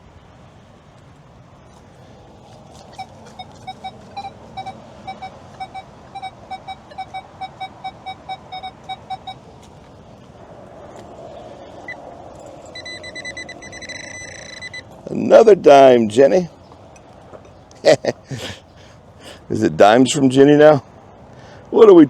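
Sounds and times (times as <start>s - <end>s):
metal detector pinpointer beeping: 2.9s - 9.5s, 11.9s - 15.9s.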